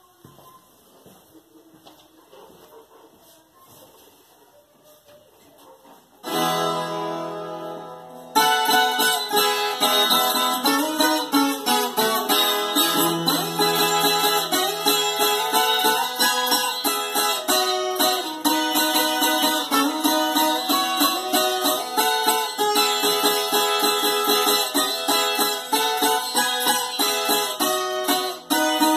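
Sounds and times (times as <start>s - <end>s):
fast plucked guitar notes: 6.2s - 28.9s
guitar strummed chord: 6.2s - 28.9s.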